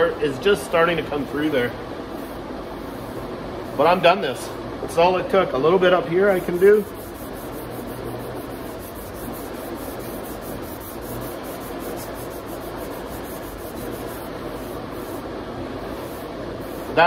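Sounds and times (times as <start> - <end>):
sandpaper rubbing on panel: 6.2 - 15.2, 16.0 - 17.0.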